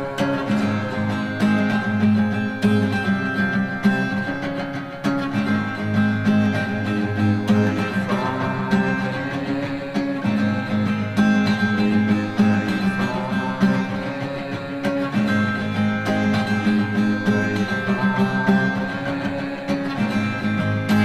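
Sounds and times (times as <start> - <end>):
acoustic guitar pop music: 0.0 - 21.0.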